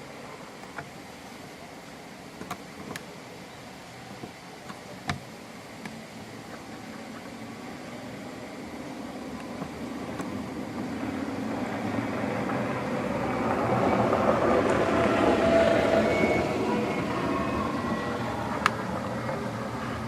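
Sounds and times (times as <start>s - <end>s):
vehicle passing on road: 9.7s - 20.0s.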